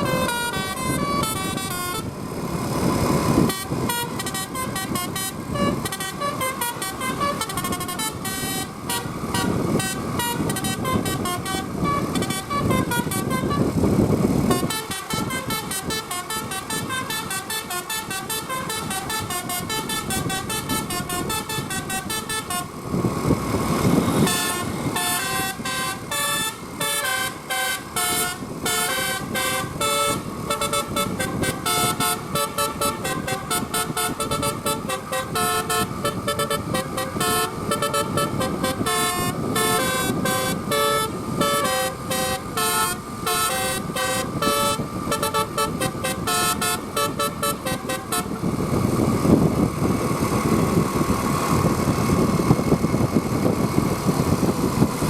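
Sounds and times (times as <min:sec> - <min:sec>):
musical bus horn tune: 0:00.0 - 0:02.2, 0:03.3 - 0:23.0, 0:23.6 - 0:48.6
bus engine running: 0:00.0 - 0:55.0.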